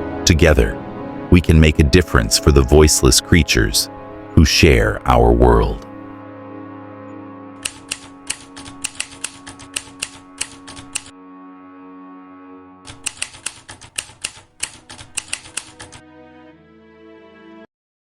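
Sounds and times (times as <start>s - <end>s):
background music: 0.0s - 17.7s
sharp typewriter-like clicks: 7.6s - 11.1s, 12.9s - 16.0s.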